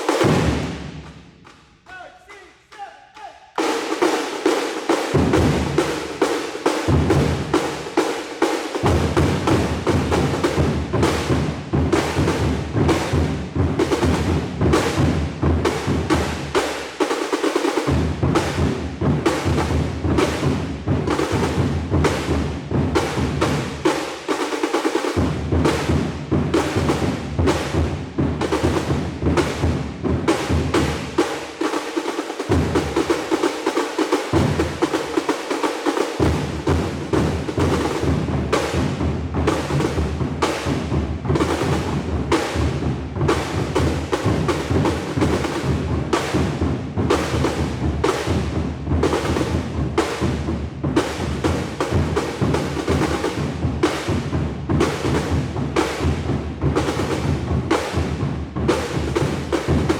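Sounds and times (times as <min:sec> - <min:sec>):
snare drums playing cadence: 0:00.0 - 0:09.4.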